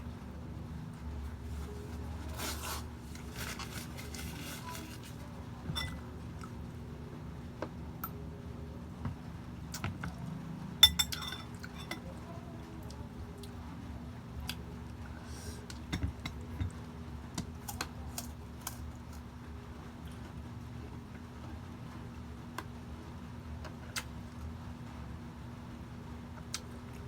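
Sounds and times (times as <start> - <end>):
cutlery and dishes clinking: 5.8 - 6.0, 10.8 - 12.0.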